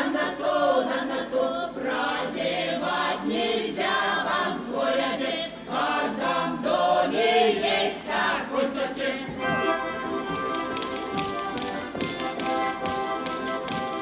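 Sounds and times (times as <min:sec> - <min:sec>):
folk choir singing unaccompanied: 0:00.0 - 0:14.0
music with steady held notes: 0:09.3 - 0:14.0.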